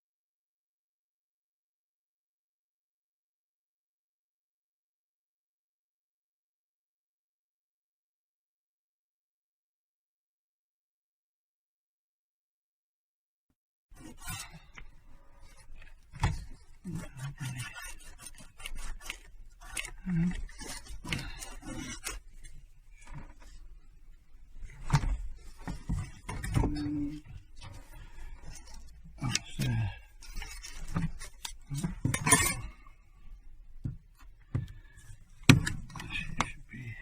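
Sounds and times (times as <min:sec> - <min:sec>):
rubbing or scraping: 0:14.0 - 0:33.4.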